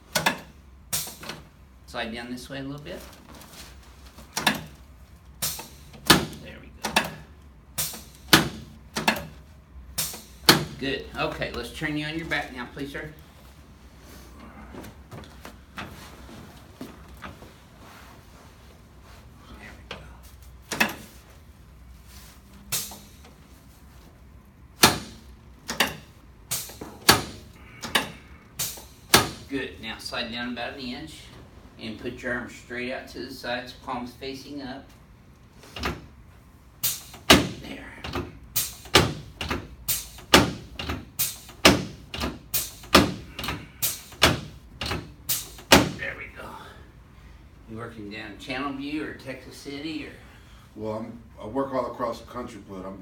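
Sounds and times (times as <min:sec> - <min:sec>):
sharp knocks in pairs: 0:38.9 - 0:43.6.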